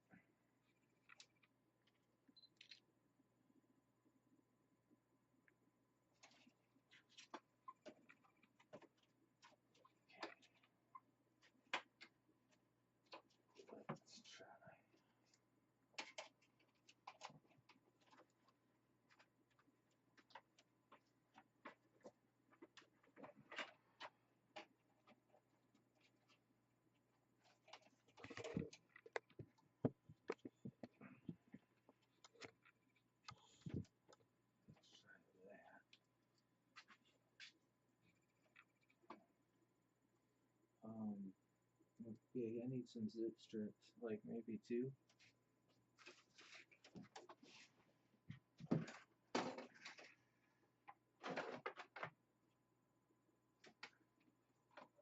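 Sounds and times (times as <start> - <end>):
cable clicks and rustles: 0.6 - 2.9, 5.4 - 26.5, 27.4 - 35.0, 45.0 - 52.2, 53.6 - 55.0.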